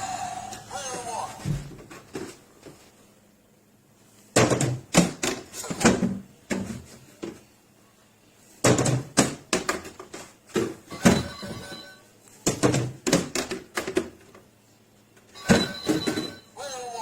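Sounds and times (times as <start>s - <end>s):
hard balls knocking and thudding: 4.3s - 7.5s, 8.6s - 11.8s, 12.4s - 14.4s.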